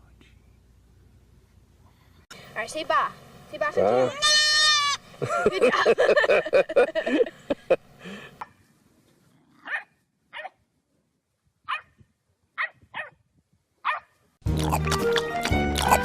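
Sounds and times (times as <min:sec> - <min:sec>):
dog barking: 0:09.6 - 0:10.6, 0:11.7 - 0:11.9, 0:12.6 - 0:13.2, 0:13.8 - 0:14.1.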